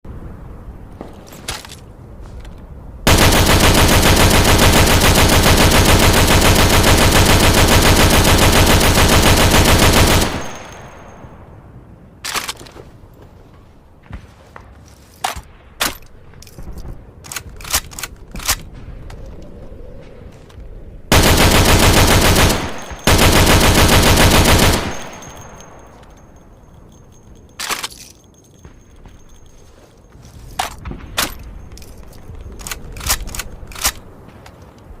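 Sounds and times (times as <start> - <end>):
machine gun firing bursts: 3.1 - 11.3, 21.1 - 26.0.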